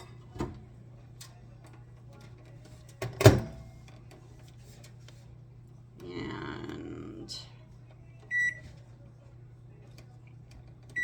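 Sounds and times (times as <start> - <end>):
microwave oven humming: 0.0 - 11.0.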